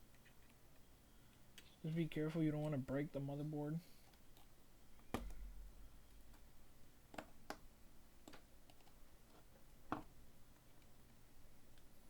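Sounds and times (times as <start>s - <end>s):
small clicks and taps: 7.1s - 10.9s.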